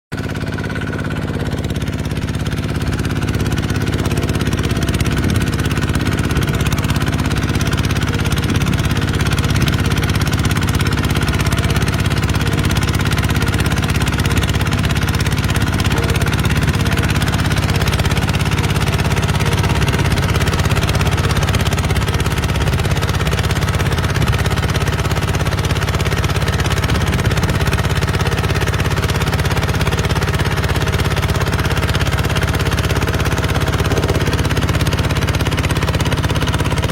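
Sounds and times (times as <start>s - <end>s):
diesel tractor engine running: 0.1s - 36.9s.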